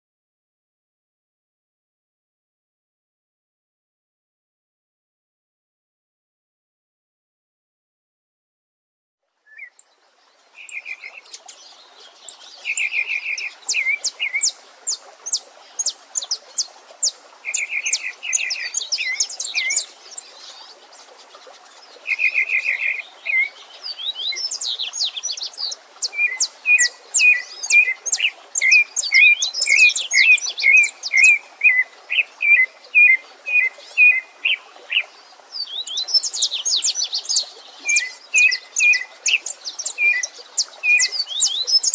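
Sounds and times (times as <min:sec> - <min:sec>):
running water: 0:09.2 - 0:41.9
songbirds singing: 0:09.4 - 0:41.9.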